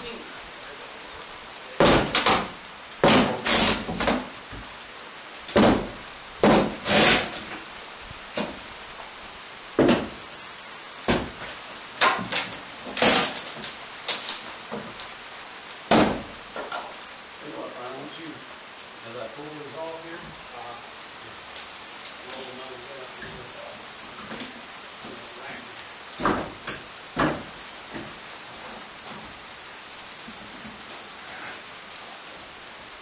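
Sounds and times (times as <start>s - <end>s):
wooden boards creaking and knocking: 1.8s - 4.7s, 5.5s - 7.6s, 9.8s - 10.2s, 11.1s - 15.1s, 26.2s - 29.4s.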